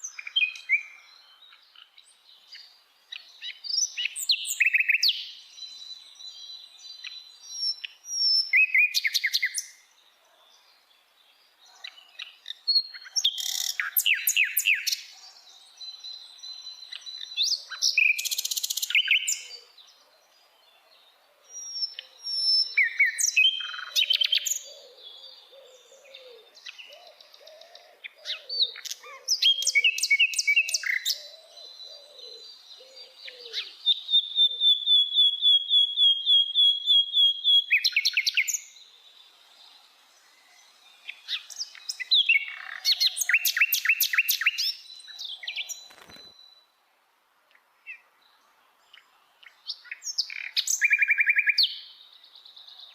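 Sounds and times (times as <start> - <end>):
songbird singing trills and chirps: 0.0 - 46.8, 47.4 - 52.9.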